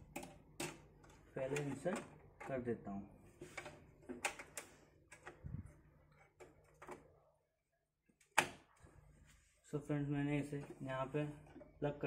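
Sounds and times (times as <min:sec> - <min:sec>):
light clicks and knocks of metal and plastic: 0:00.0 - 0:02.8.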